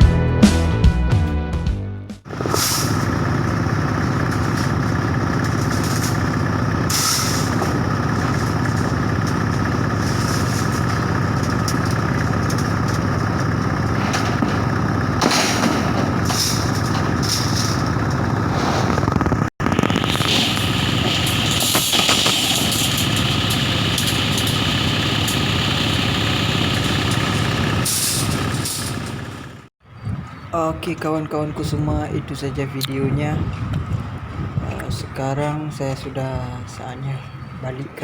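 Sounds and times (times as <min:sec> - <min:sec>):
diesel engine idling: 0:02.2 - 0:29.7
hissing bursts: 0:02.3 - 0:11.4, 0:18.3 - 0:29.3.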